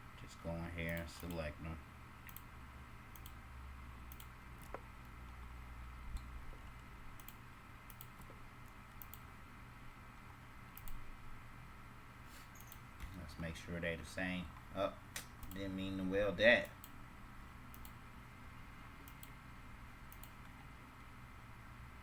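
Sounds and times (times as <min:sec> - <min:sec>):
steady low hum: 0:00.0 - 0:22.0
mouse and keyboard clicks: 0:12.6 - 0:13.1, 0:20.1 - 0:20.6.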